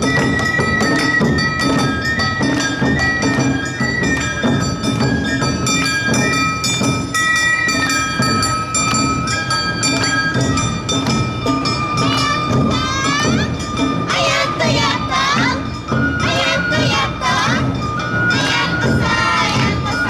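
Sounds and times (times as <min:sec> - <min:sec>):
clanging hand gong: 0:00.0 - 0:14.7
drums beating: 0:00.0 - 0:20.0
people shouting calls: 0:12.0 - 0:15.6
bamboo flute long high notes: 0:12.0 - 0:20.0.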